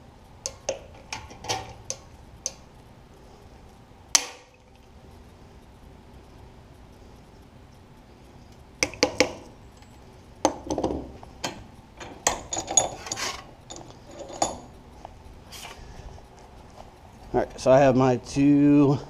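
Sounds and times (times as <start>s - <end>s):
metallic clicks and clinks: 0.4s - 2.7s, 8.5s - 15.4s.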